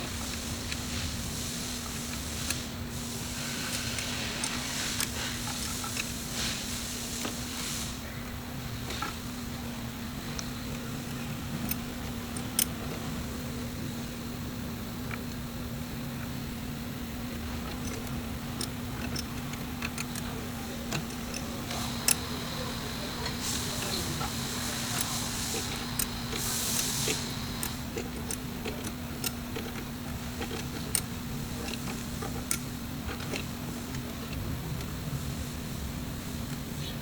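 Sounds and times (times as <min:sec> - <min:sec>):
steady low hum: 0:00.0 - 0:37.0
tool clicks and metallic clinks: 0:10.4 - 0:13.0, 0:17.6 - 0:34.4.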